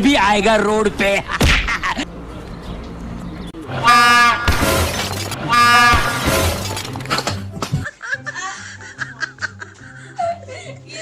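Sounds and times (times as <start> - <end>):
loud train horn blasts: 3.8 - 4.5, 5.5 - 6.3.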